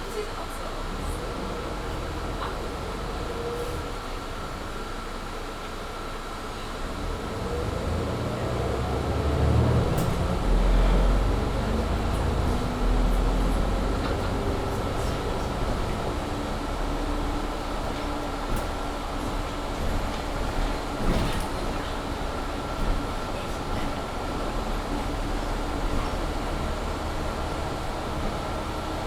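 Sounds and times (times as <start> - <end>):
bus engine accelerating: 0.0 - 29.0.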